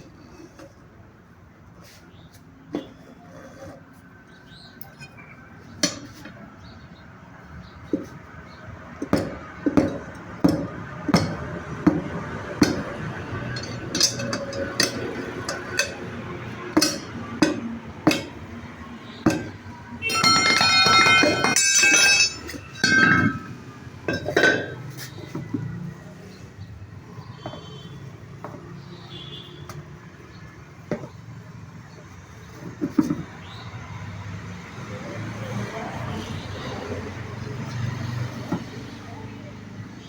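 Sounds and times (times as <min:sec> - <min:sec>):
metal tools clinking: 0:13.4 - 0:18.4, 0:19.2 - 0:25.4
bell-like ringing tones: 0:20.0 - 0:23.6.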